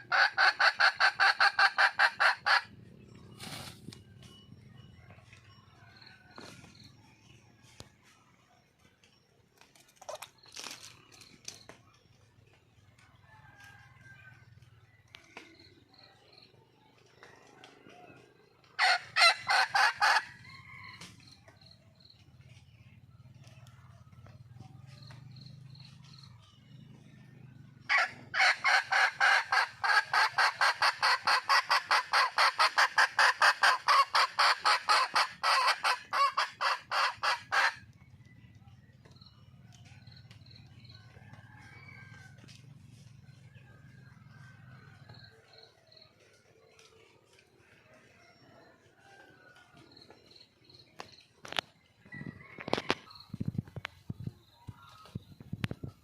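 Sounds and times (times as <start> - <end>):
junglefowl hen clucking: 0.0 - 7.9, 17.1 - 22.8, 27.9 - 38.4, 51.0 - 56.0.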